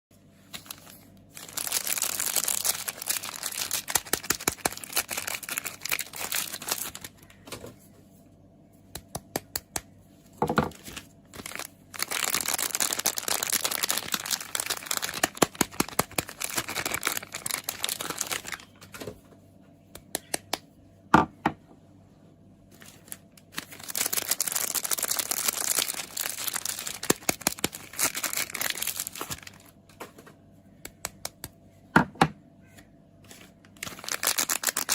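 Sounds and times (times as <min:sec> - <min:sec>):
wrapper crinkling and tearing: 0:00.5 - 0:07.4, 0:10.6 - 0:18.9, 0:22.7 - 0:29.8, 0:33.2 - 0:34.9.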